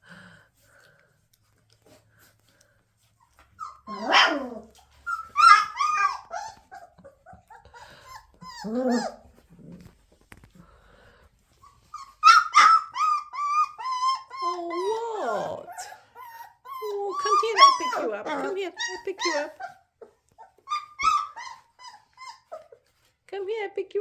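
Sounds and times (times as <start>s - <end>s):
puppy whining and yelping: 3.0s - 10.1s, 11.5s - 23.2s.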